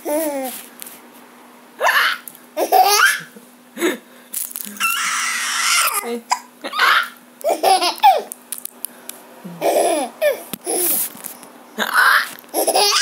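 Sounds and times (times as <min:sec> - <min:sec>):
baby laughing and babbling: 0:00.0 - 0:00.6, 0:01.8 - 0:03.4, 0:05.8 - 0:08.3, 0:09.5 - 0:11.0, 0:11.8 - 0:13.0.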